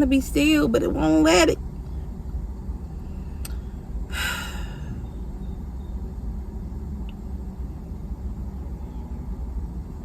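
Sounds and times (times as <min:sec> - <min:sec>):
steady low hum: 0:00.0 - 0:10.0
woman sighing: 0:04.1 - 0:05.0.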